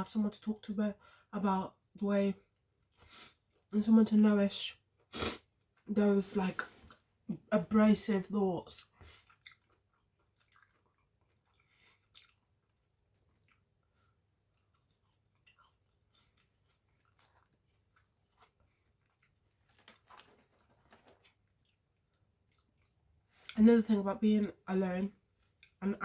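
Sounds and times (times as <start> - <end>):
chewing and mouth sounds: 8.8 - 23.6, 25.1 - 25.8.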